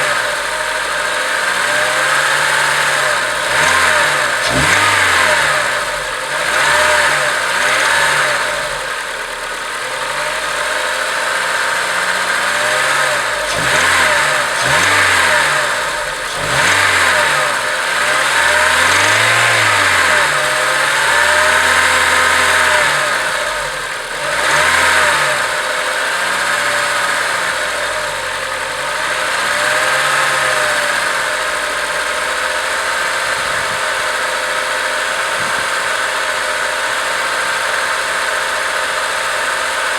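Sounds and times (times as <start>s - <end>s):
car engine revving and idling: 0.0s - 39.9s.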